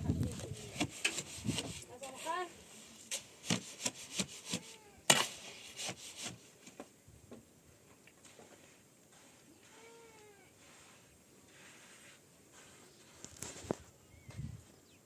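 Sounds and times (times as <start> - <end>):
scraping wood: 0.1 - 6.8.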